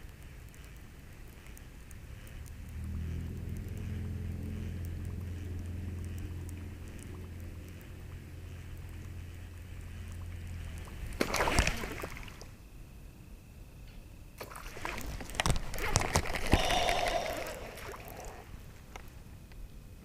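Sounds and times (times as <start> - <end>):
fish splashing at water surface: 10.8 - 12.5, 14.4 - 18.5.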